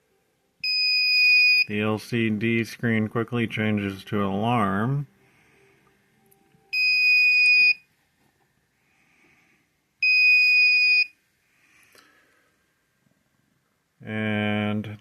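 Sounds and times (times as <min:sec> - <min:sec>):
high steady buzzer beeps: 0:10.0 - 0:11.2.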